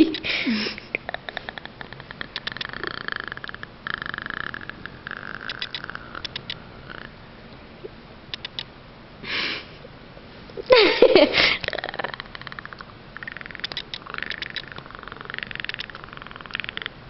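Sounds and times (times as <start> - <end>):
small animal clicking rasp: 1.0 - 7.1, 8.3 - 8.7, 11.7 - 17.0.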